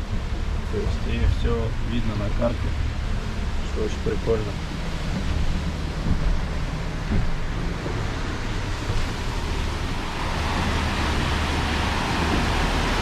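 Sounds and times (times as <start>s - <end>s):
rushing sea water: 0.0s - 13.0s
wind: 0.0s - 13.0s
low hum: 4.6s - 13.0s.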